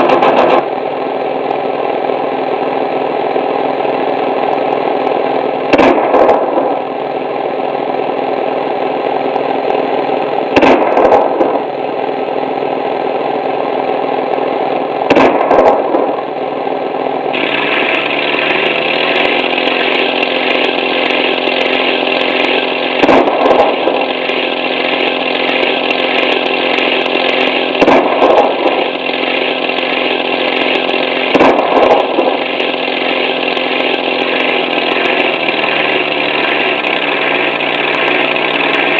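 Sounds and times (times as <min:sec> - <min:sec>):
engine running: 0:00.0 - 0:38.9
short loud engine burst: 0:17.3 - 0:38.9.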